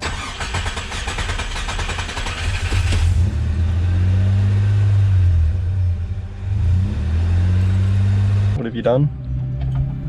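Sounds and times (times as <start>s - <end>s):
car engine rattly clatter: 0.0s - 3.8s, 9.4s - 10.0s
car engine idle hum: 8.6s - 10.0s.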